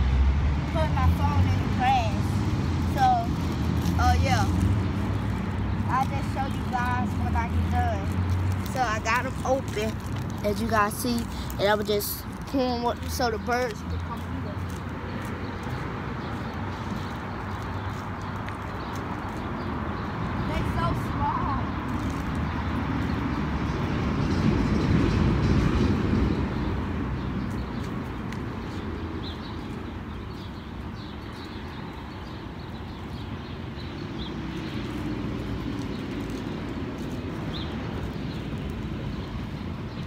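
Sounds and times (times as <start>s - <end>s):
traffic rumble: 0.0s - 40.0s.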